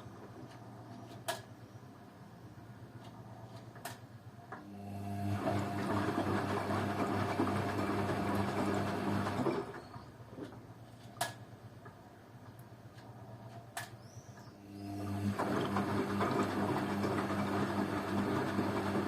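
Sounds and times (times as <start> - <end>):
washing machine motor hum: 4.6 - 10.1, 14.6 - 19.0.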